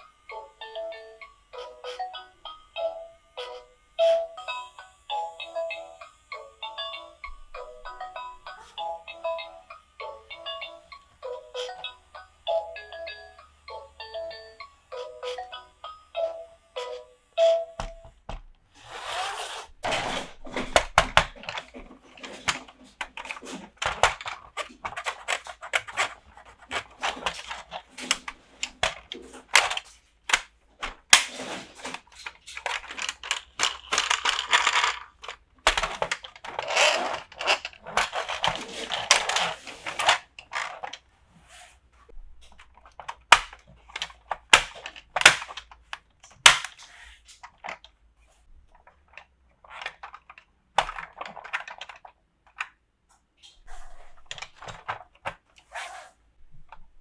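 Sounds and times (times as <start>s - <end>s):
wrapping rustling and tearing: 18.8s - 30.0s, 30.9s - 41.0s
plastic pieces clicking: 19.8s - 41.0s, 42.4s - 48.0s, 48.7s - 52.8s.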